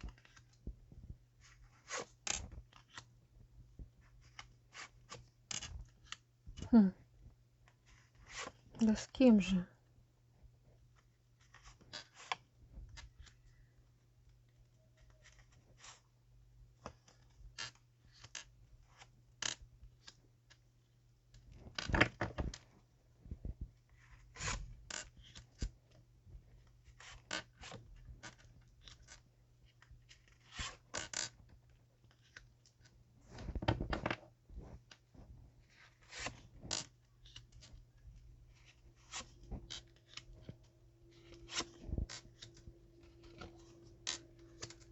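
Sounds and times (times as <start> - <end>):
cards rustling and sliding: 1.4 - 3.1, 4.0 - 6.2, 7.8 - 8.7, 11.0 - 13.4, 26.9 - 31.4, 32.1 - 44.9
faint low hum: 36.5 - 44.9.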